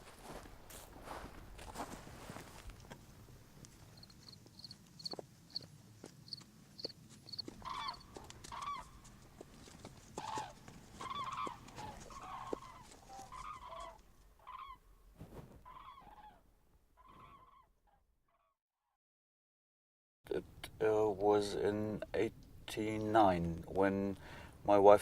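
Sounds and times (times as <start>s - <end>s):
birds calling: 6.3s - 14.9s.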